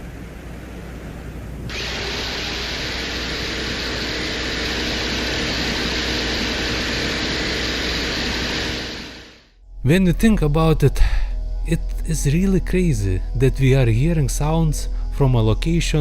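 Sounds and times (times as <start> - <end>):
faint hum: 0.0 - 16.0
drill whirring: 1.7 - 9.5.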